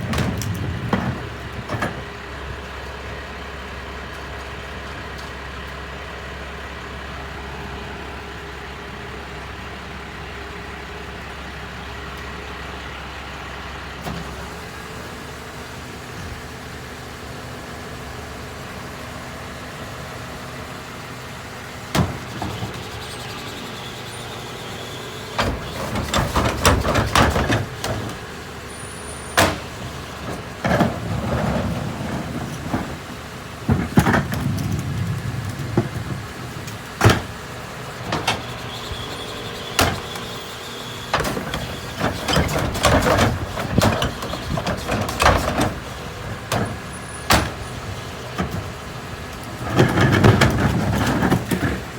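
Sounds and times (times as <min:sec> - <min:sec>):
trash banging and clattering: 0:00.0 - 0:02.9, 0:21.6 - 0:51.9
garbage truck engine idling: 0:00.0 - 0:51.9.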